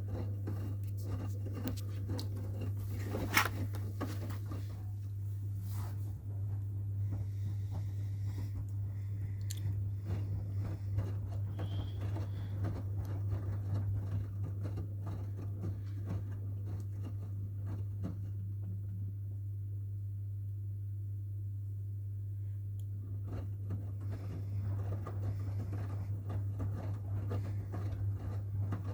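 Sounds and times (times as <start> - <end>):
clicks and rustles: 0.0 - 5.2
washing machine humming: 0.0 - 20.5, 21.6 - 28.9.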